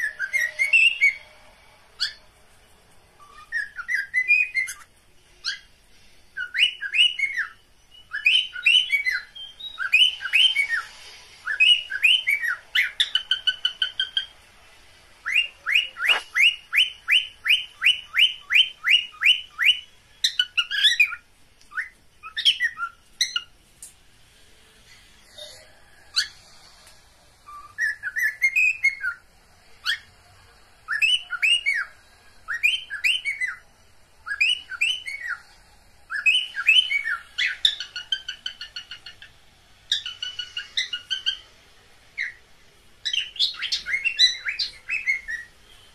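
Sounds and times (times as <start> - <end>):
cockatiels whistled chirps: 0.0 - 1.4, 2.0 - 2.3, 3.2 - 5.7, 6.4 - 14.3, 15.2 - 23.5, 27.4 - 29.2, 29.8 - 30.1, 30.8 - 33.6, 34.2 - 39.3, 39.9 - 41.5, 42.2 - 42.4, 43.0 - 45.9.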